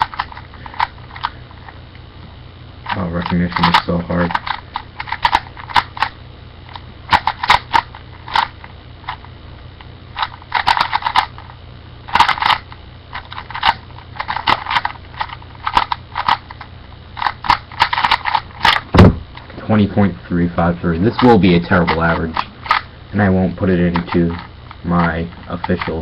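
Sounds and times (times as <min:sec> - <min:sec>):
puzzle cube clacking: 0:00.0 - 0:01.7, 0:02.8 - 0:09.3, 0:10.1 - 0:11.5, 0:12.1 - 0:20.2, 0:20.9 - 0:26.0
steady low hum: 0:00.0 - 0:26.0.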